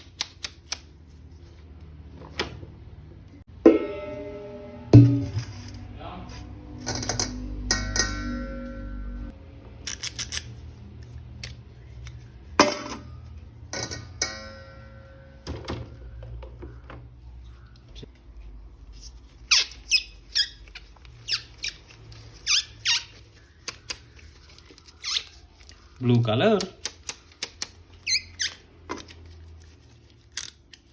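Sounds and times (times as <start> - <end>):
plastic rubbing squeaks: 18.9 - 26.0, 27.9 - 30.6.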